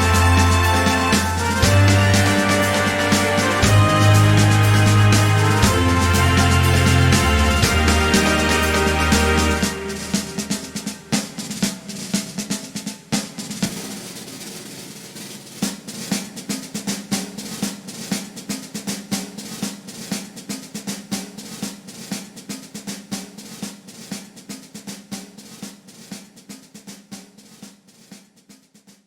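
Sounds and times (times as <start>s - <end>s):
steady low note: 0.0s - 11.1s
fast snare drum and percussion: 0.0s - 29.0s.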